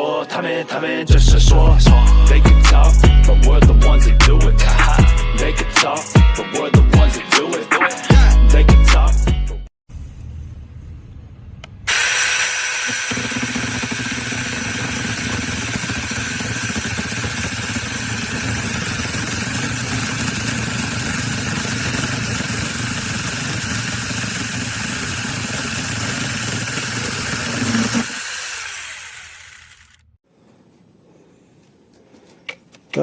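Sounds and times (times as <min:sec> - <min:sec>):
mini chainsaw running: 0:11.9 - 0:30.2.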